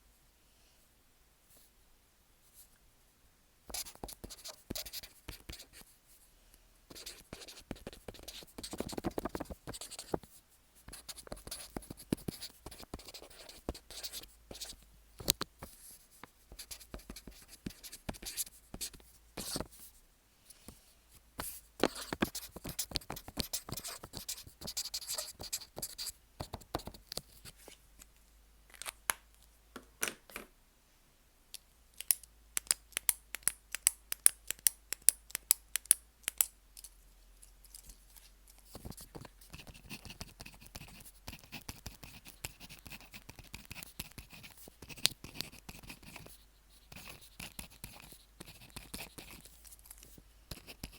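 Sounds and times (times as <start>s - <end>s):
pen scratching on paper: 3.7s - 5.8s, 6.9s - 10.2s, 10.9s - 14.8s, 16.5s - 19.7s, 21.4s - 27.0s, 38.7s - 50.9s.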